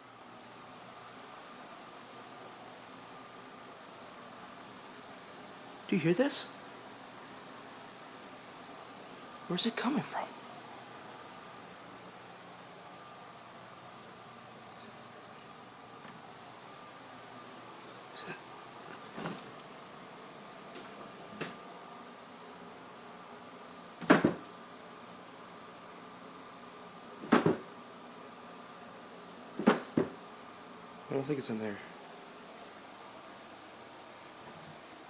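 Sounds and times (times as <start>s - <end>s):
cricket trilling: 0.0s - 35.0s
sharp knocks: 24.0s - 24.4s, 27.2s - 27.6s, 29.6s - 30.2s.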